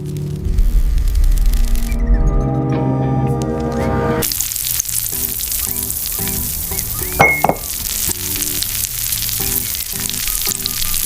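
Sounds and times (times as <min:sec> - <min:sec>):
crackling hiss: 0:00.0 - 0:02.0, 0:04.2 - 0:11.0.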